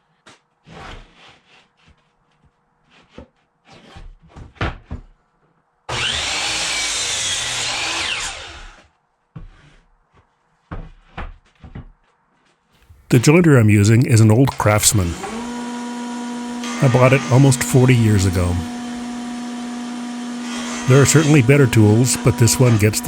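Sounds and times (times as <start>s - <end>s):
power saw cutting wood: 5.9s - 8.8s, 13.3s - 23.0s.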